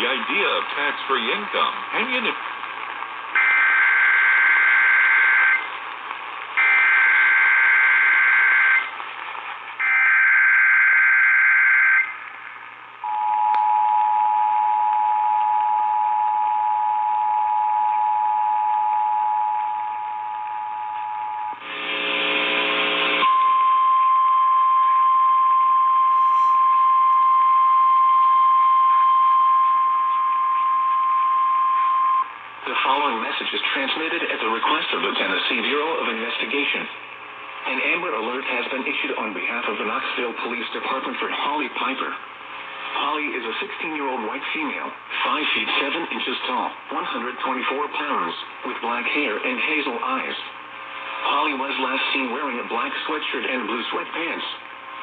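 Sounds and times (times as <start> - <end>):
radio hiss: 0.0 - 10.0, 21.6 - 23.3, 32.3 - 55.0
buzzy digital header bursts: 21.6 - 23.2.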